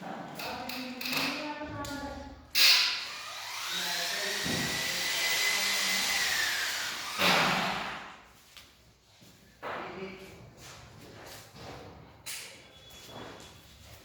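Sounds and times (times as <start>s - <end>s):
electric motor whining: 3.0s - 7.3s.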